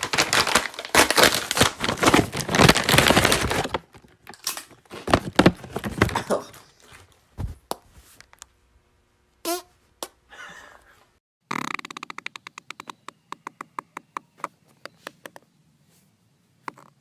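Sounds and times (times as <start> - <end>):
fart: 9.4 - 9.7, 11.4 - 12.8.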